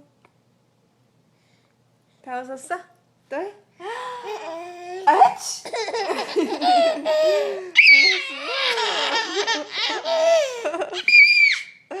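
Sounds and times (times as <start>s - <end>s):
baby laughing and squealing: 4.3s - 11.8s.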